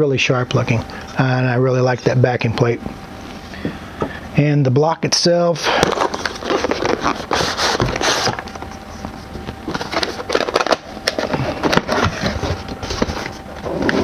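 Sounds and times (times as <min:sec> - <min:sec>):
packaging rustling: 0:05.6 - 0:14.0.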